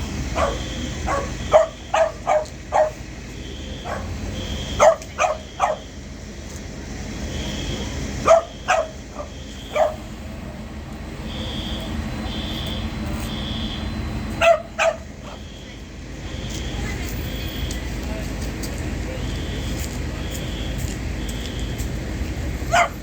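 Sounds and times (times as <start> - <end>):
faint high-pitched fire alarm: 0.4 - 2.3, 3.2 - 6.0, 7.2 - 10.3, 11.2 - 14.4, 15.1 - 18.0, 19.1 - 21.9
dog barking: 0.4 - 3.0, 3.8 - 5.9, 8.2 - 10.0, 14.4 - 15.4, 22.7 - 23.0.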